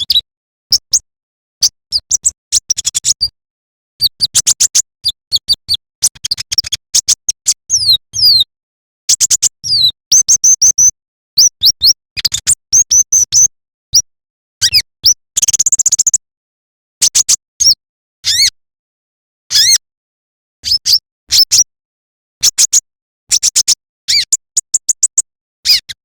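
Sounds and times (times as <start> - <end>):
sunbird chirping and whistling: 1.9 - 3.3, 5.1 - 6.8, 7.7 - 8.5, 9.2 - 12.0, 19.5 - 19.8, 24.1 - 25.8.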